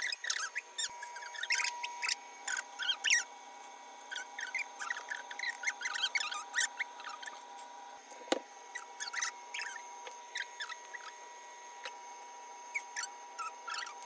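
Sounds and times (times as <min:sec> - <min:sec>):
high-pitched squeaks and chirps: 0:00.0 - 0:03.3, 0:04.1 - 0:07.4, 0:08.7 - 0:11.2, 0:12.6 - 0:14.0.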